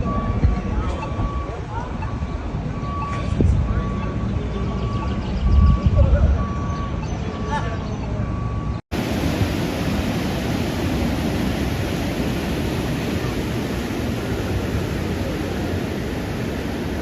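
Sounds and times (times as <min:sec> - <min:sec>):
water rushing: 0:08.9 - 0:17.0.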